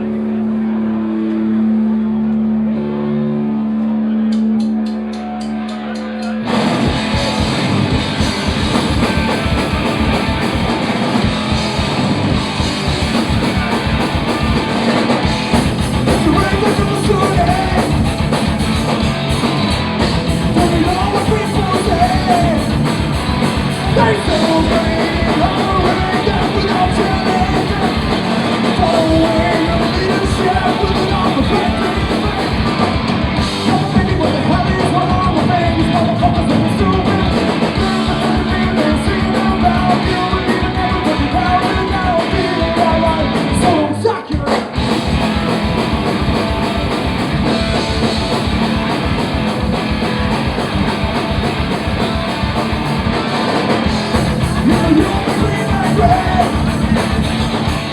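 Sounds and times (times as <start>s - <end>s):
punk rock band playing live: 4.3s - 57.9s
person singing: 16.1s - 18.4s, 20.5s - 44.8s, 53.8s - 57.9s.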